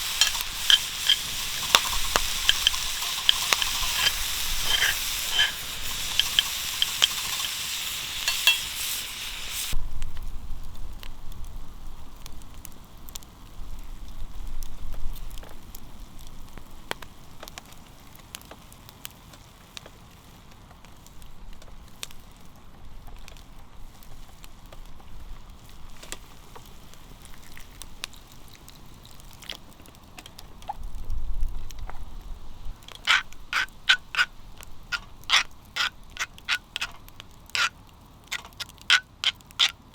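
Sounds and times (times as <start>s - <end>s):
food sizzling in a frying pan: 0.0s - 10.0s, 25.3s - 39.9s.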